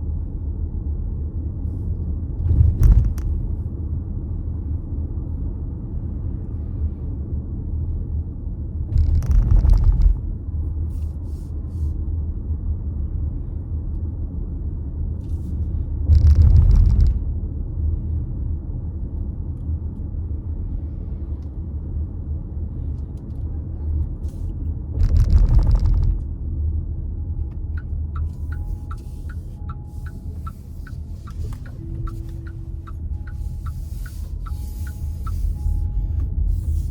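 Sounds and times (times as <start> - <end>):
car road and engine rumble: 0.0 - 36.9
regular ticking: 27.8 - 36.2.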